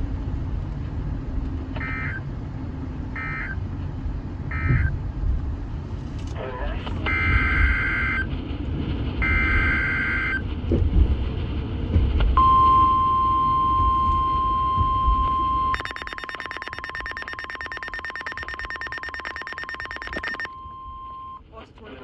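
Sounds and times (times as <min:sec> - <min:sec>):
steady warning alarm tone: 0:09.2 - 0:10.4, 0:12.4 - 0:21.4
buzzy pulsing electronic alarm: 0:15.7 - 0:20.5
warbling two-tone data burst: 0:15.8 - 0:20.5.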